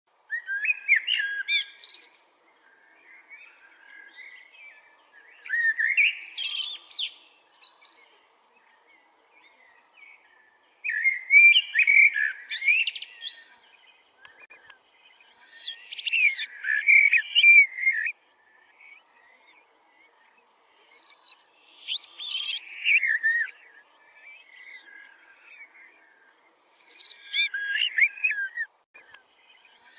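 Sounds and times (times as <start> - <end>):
bird singing whistled phrases: 0.3 - 2.2, 5.4 - 8.2, 10.8 - 14.4, 15.4 - 18.2, 20.8 - 25.7, 26.7 - 29.9.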